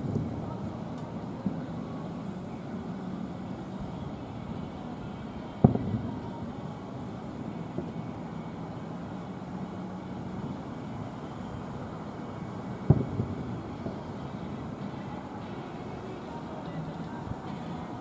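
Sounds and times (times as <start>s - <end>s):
steady low rumble: 0.0s - 18.0s
firework shell bursting: 5.6s - 6.4s, 12.8s - 16.2s.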